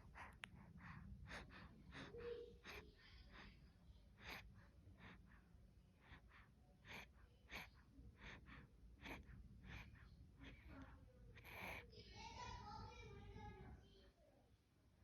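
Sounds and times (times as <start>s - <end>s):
faint breathy snoring: 0.0s - 12.0s.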